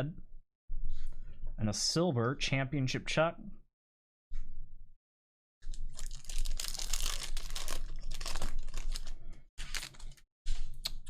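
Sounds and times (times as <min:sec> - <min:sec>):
wrapper tearing and crinkling: 0:05.7 - 0:10.2.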